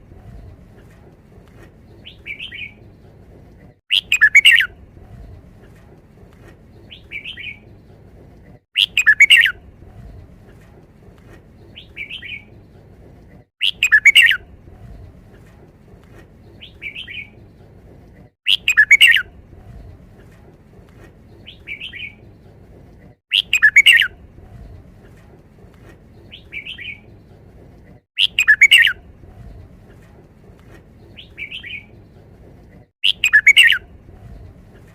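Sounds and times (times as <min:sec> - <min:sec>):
bird singing short phrase: 0:28.2 - 0:29.0, 0:33.0 - 0:33.9.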